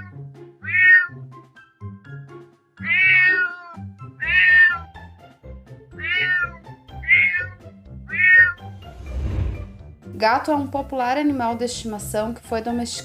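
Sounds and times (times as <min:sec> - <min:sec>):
cat meowing: 0:00.0 - 0:01.2, 0:02.8 - 0:04.9, 0:06.0 - 0:08.6
background music: 0:00.0 - 0:13.0.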